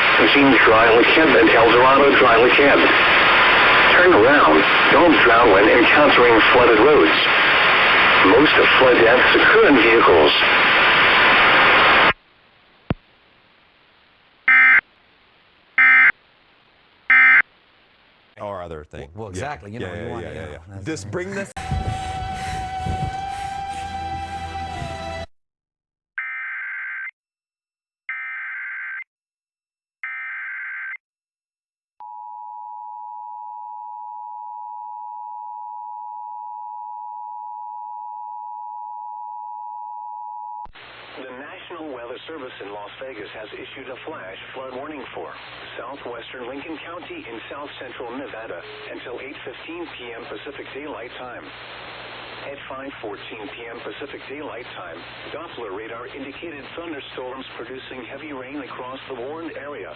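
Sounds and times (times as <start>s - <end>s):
loud radio hiss: 0.0s - 12.2s, 40.8s - 59.9s.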